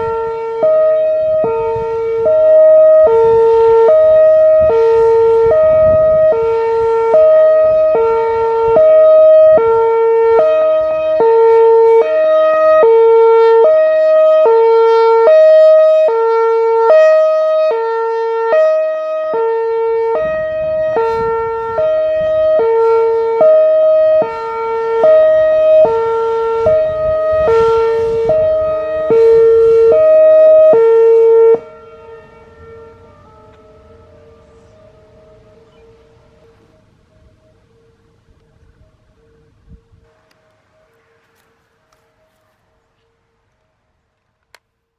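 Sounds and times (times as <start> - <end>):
siren hi-lo tone: 0.0 - 42.5.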